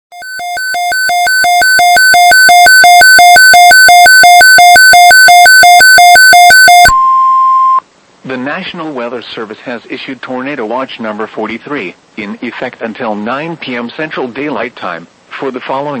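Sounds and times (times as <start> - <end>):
weather radio alert alarm: 0.2 - 7.8.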